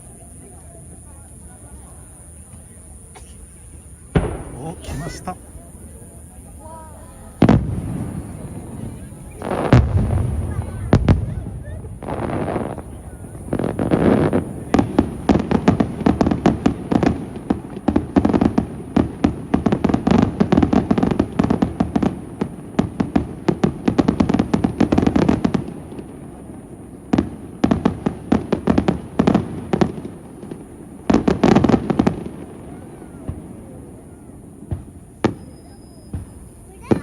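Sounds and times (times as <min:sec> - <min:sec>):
fireworks bursting: 0:03.3 - 0:05.6, 0:07.3 - 0:26.4.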